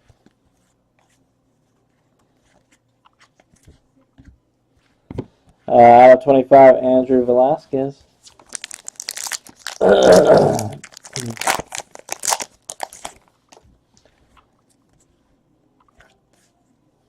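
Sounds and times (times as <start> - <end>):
wrapper crinkling and tearing: 8.3 - 13.6.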